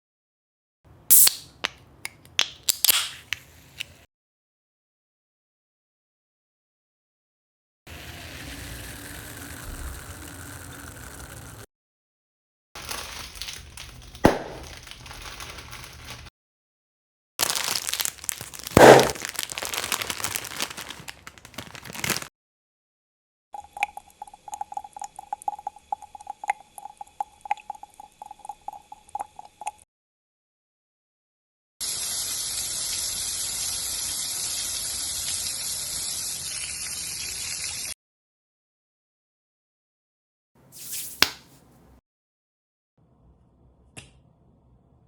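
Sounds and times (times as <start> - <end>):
crackle of clicks: 17.4 - 22.3.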